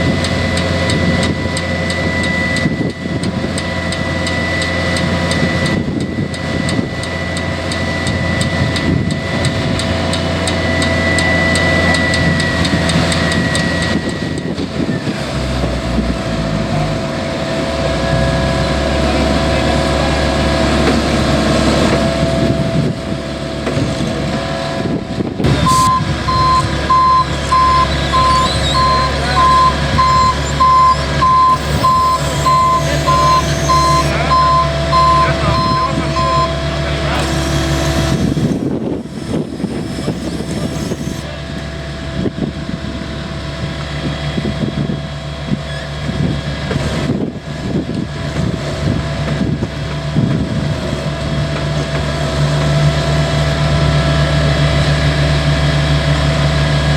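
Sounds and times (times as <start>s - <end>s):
reversing alarm beeping: 0.0s - 14.6s, 25.4s - 41.3s
paving machinery engine hum: 0.0s - 56.9s.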